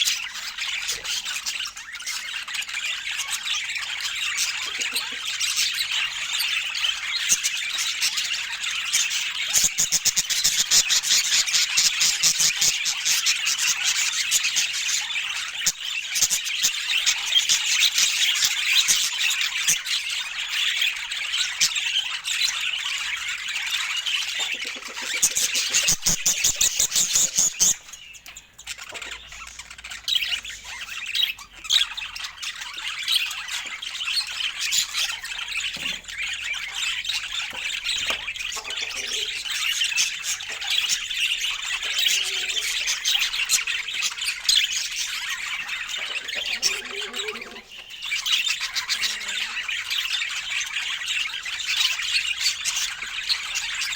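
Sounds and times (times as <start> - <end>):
budgerigars chattering and chirping: 0.0 - 53.9.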